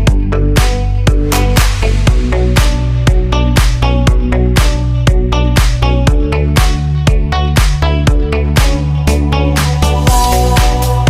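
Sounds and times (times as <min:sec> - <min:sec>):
electronic dance music: 0:00.0 - 0:11.0.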